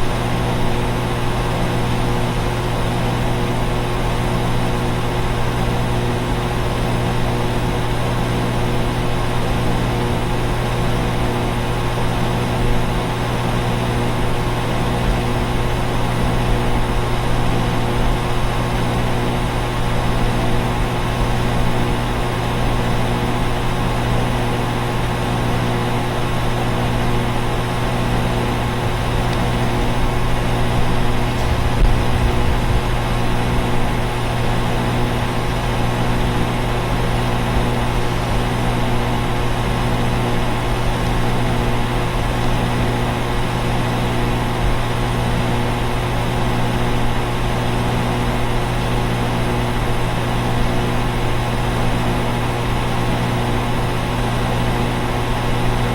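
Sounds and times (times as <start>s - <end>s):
air conditioner units running: 0.0s - 55.9s.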